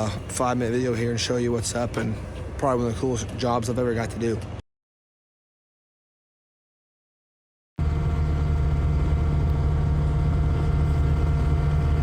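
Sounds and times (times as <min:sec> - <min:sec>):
heavy machine engine running: 0:07.8 - 0:12.0.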